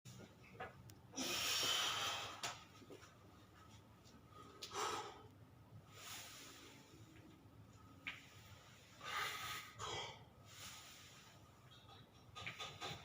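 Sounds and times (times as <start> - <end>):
person breathing heavily: 4.4 - 5.3, 8.9 - 11.2.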